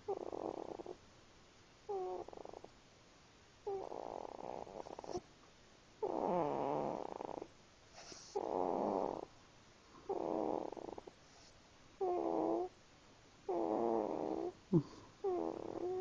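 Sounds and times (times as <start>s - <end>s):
raspy snoring: 0.1s - 1.0s, 1.9s - 2.7s, 3.7s - 5.2s, 6.0s - 9.3s, 10.0s - 12.7s, 13.5s - 16.0s.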